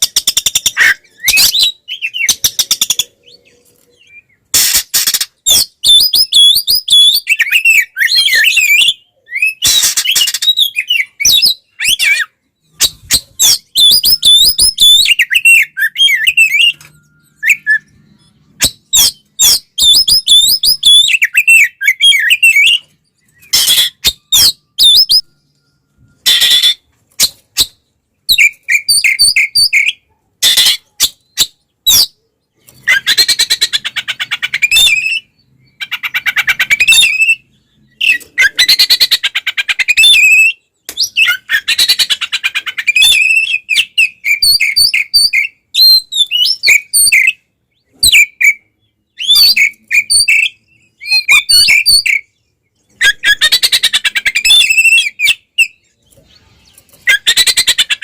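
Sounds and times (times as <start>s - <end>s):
sharp whistled bird notes: 0.0s - 32.1s
songbird singing rattling phrases: 0.0s - 58.0s.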